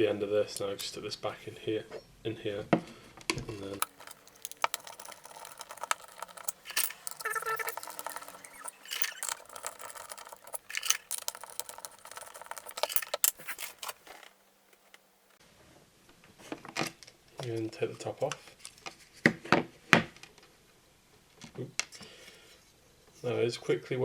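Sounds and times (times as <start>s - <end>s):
metal tools and screws clinking: 3.8s - 15.0s.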